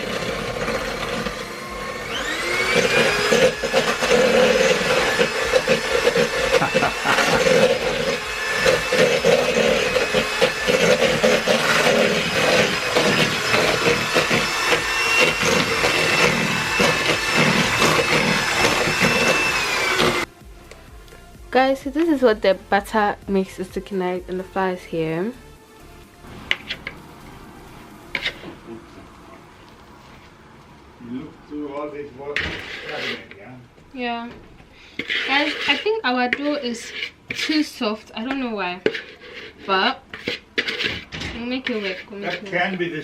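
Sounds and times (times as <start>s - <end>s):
electric mixer motor whine: 0.0s - 22.5s, 25.4s - 31.1s.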